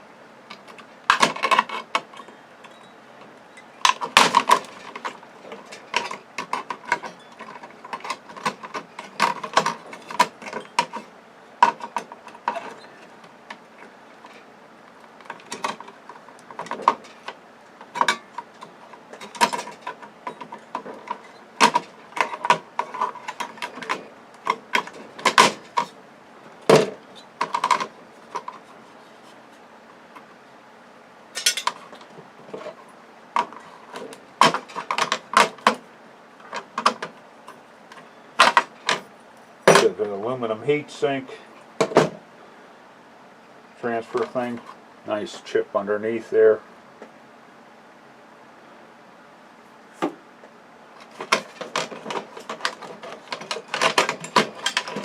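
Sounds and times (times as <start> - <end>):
hand tools clicking on metal: 51.0 - 55.0.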